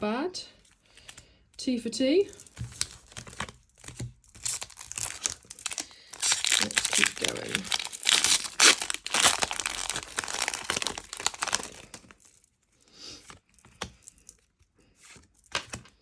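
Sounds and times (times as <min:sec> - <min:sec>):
foil wrapper tearing and crinkling: 0:02.3 - 0:12.5.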